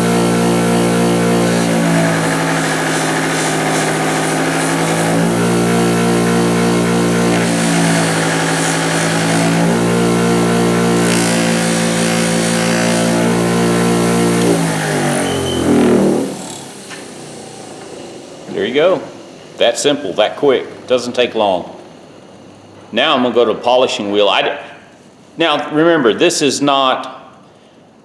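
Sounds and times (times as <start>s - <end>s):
wire wheel brushing metal: 0.0s - 18.6s
bench grinder motor hum: 0.0s - 19.6s
grinder wheel coasting down: 0.0s - 19.6s.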